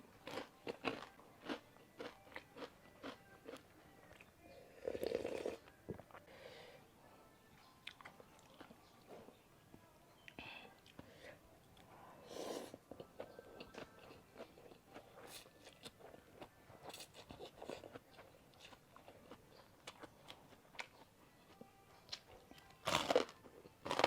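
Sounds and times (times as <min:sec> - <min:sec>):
person chewing noodles: 0:00.2 - 0:03.6, 0:12.8 - 0:21.0, 0:22.9 - 0:24.0.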